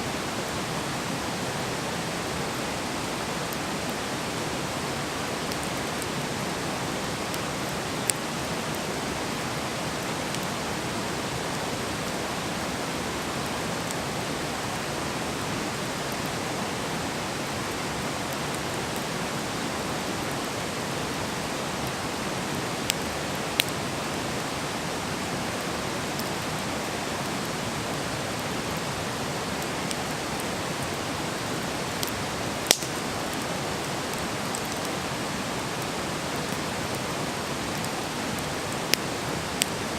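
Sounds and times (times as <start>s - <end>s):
campfire hissing: 0.0s - 39.9s
burning wood popping: 32.0s - 33.0s.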